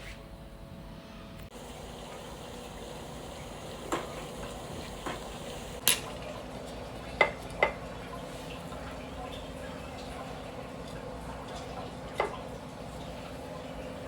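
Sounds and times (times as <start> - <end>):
stove hissing: 1.4 - 6.0.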